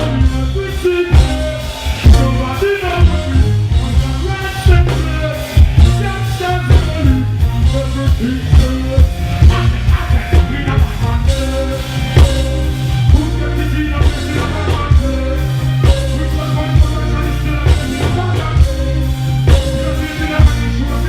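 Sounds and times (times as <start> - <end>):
heavy bass line: 0.0 - 21.0
person singing: 0.0 - 21.0
steady drum beat: 0.0 - 21.0.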